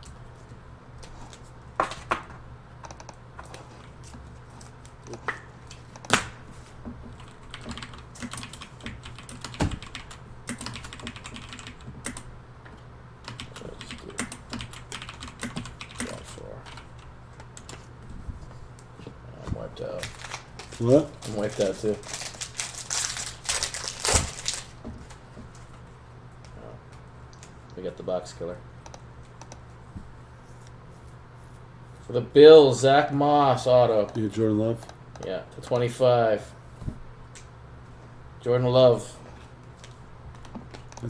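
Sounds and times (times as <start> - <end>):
low electrical hum: 0.0 - 41.0
computer keyboard typing: 2.8 - 3.9, 7.1 - 12.3, 13.2 - 17.9, 28.8 - 29.8.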